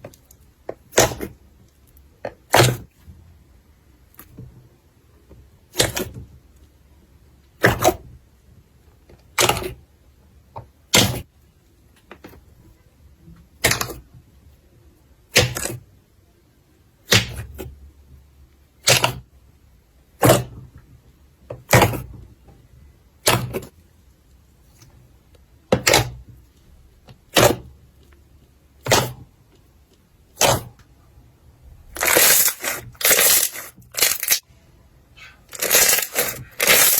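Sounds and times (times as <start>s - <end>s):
slime crackling when squeezed: 32.0s - 34.4s, 35.5s - 36.9s.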